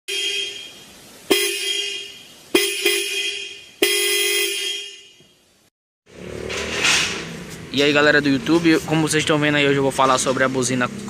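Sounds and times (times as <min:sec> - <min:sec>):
car horn blasts: 0:00.1 - 0:05.4.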